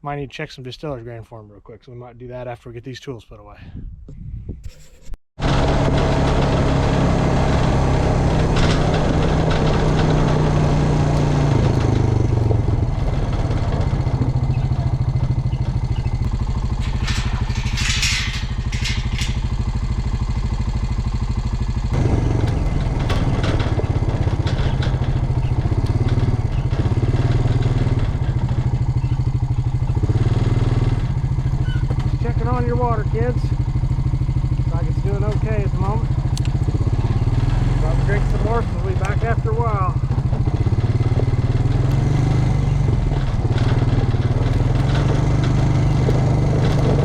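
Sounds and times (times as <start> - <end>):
vehicle engine running: 5.4 - 47.0
short clicks or rattles: 8.3 - 21.2.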